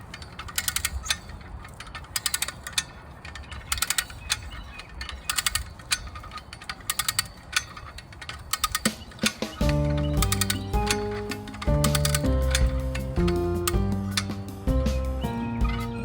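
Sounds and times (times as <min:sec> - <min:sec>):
ratchet clicking: 0:00.0 - 0:16.0.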